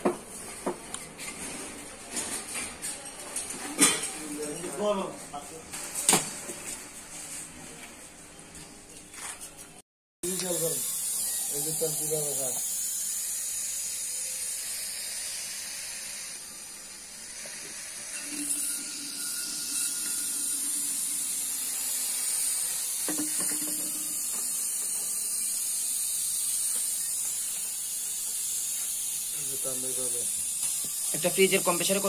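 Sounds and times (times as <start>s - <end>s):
compressor high hiss: 10.2s - 32.0s.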